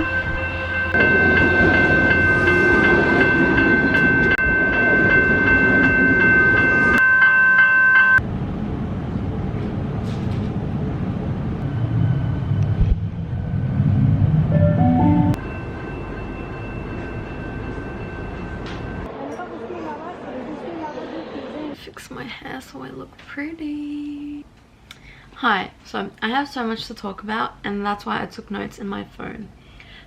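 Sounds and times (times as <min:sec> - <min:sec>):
train rumble: 0:08.2 - 0:19.1.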